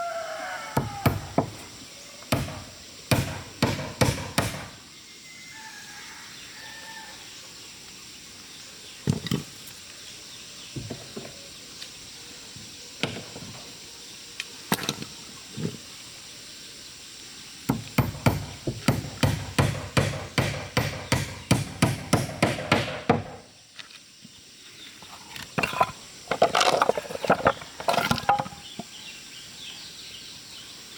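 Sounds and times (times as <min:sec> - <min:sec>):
tool knocking on timber: 0:17.7 - 0:23.4, 0:25.6 - 0:28.9.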